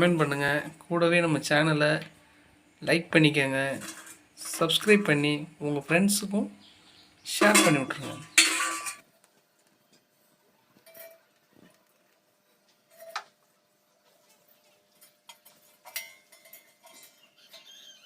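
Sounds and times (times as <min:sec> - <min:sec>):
faint steady hum: 0:00.0 - 0:16.6.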